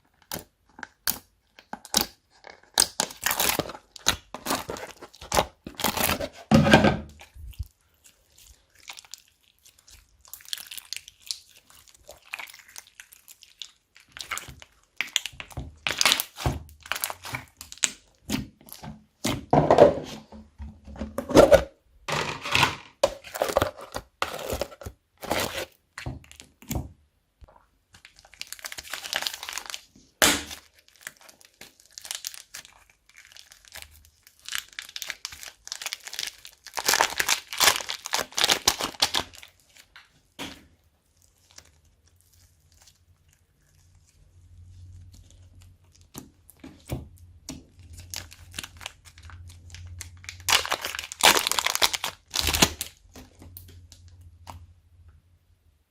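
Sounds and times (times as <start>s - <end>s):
slime squelching by hand: 7.1s - 20.4s, 27.4s - 54.9s.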